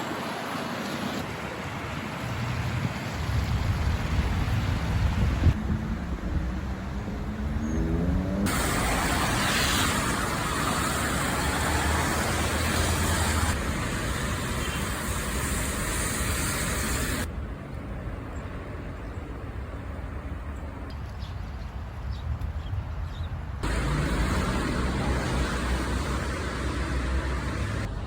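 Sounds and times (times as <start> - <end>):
street traffic: 0.1 - 28.0
strong wind: 1.2 - 23.7
vehicle engine accelerating: 5.6 - 13.6, 23.6 - 27.9.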